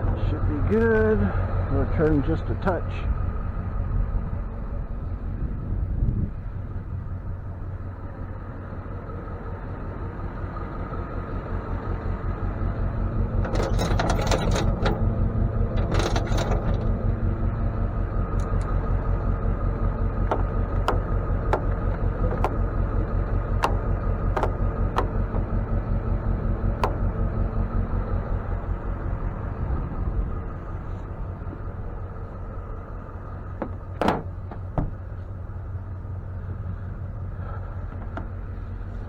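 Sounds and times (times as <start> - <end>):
truck engine droning: 0.0 - 39.0
metallic rattles and clanks: 13.4 - 15.0, 15.7 - 17.0, 20.2 - 26.2, 26.8 - 27.4.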